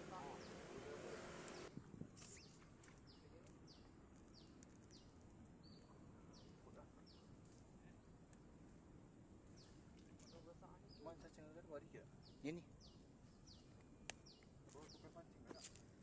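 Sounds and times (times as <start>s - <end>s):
steady high hiss: 0.0s - 2.6s.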